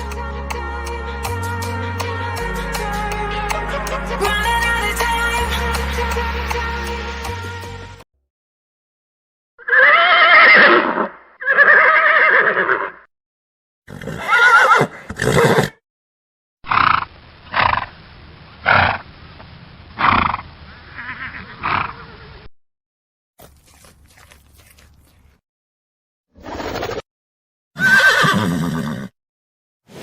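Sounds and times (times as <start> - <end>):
horse whinnying: 9.6 - 13.1, 13.9 - 15.8, 27.8 - 29.1
horse snorting: 23.4 - 25.3.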